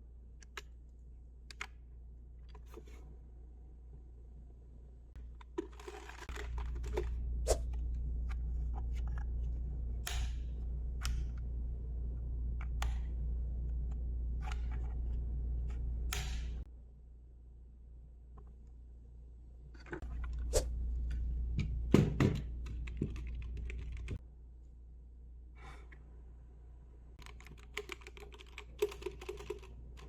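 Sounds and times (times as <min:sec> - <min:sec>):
low steady hum: 0:00.0 - 0:30.0
keyboard clicks and knocks: 0:21.6 - 0:24.2, 0:27.2 - 0:30.0.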